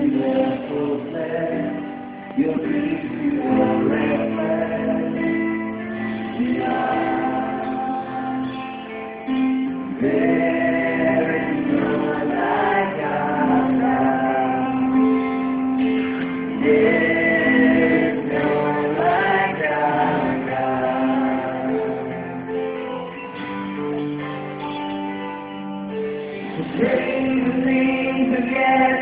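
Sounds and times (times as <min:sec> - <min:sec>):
several voices singing with music: 0:00.0 - 0:22.7, 0:26.3 - 0:29.0.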